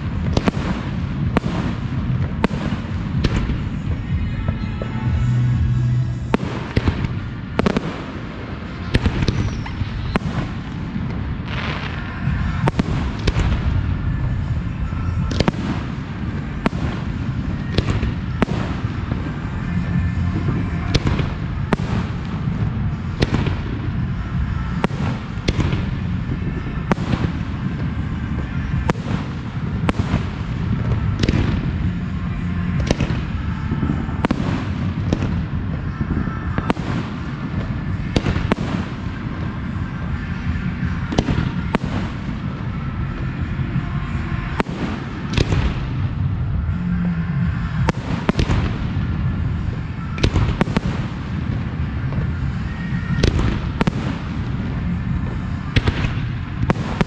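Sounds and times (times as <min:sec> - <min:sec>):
fireworks bursting with sharp bangs: 0:00.0 - 0:57.0
low rumble: 0:00.0 - 0:57.0.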